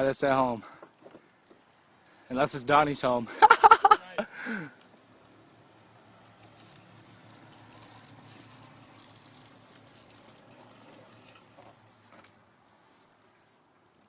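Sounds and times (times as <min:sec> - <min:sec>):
liquid fuel pouring and splashing: 0:06.3 - 0:11.7.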